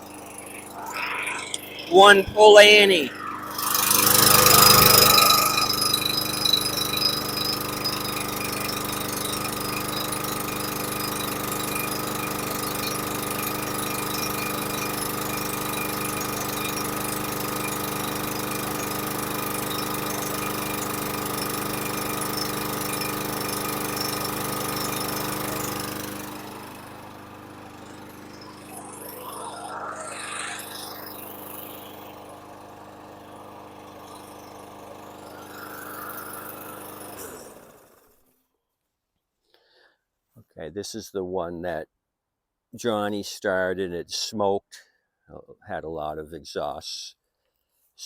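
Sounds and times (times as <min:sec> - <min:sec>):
lawn mower engine running: 0:00.0 - 0:00.8, 0:01.5 - 0:38.1.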